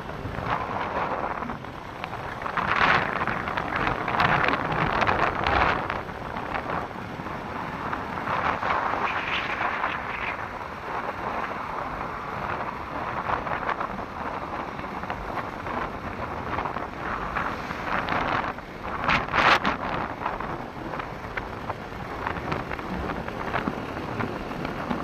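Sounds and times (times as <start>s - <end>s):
wind buffeting microphone: 0.0s - 25.0s.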